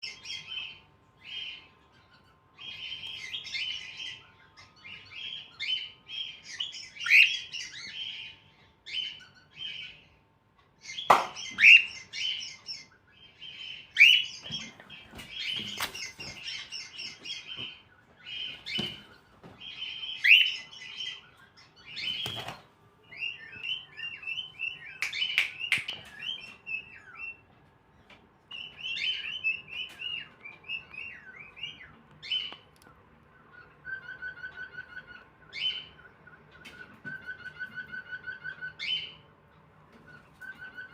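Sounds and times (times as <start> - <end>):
cockatiel chirping and chattering: 0.0 - 10.2, 10.8 - 22.4, 33.3 - 39.2.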